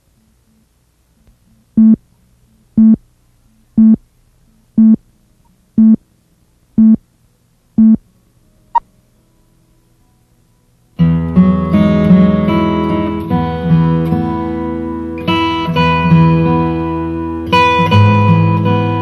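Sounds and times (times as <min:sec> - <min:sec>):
low electronic beeps: 0:01.8 - 0:02.0, 0:02.8 - 0:03.0, 0:03.8 - 0:04.0, 0:04.8 - 0:05.0, 0:05.8 - 0:06.0, 0:06.8 - 0:07.0, 0:07.8 - 0:08.0.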